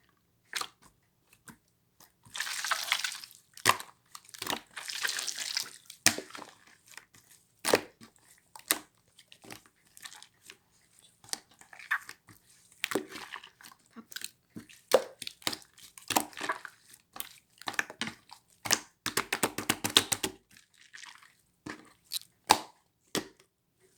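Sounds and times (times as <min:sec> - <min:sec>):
crunching and crackling clicks: 0:22.1 - 0:22.3.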